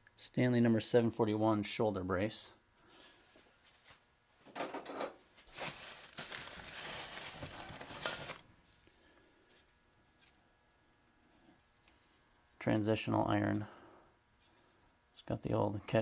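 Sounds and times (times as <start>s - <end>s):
rustling packing material: 5.3s - 8.8s.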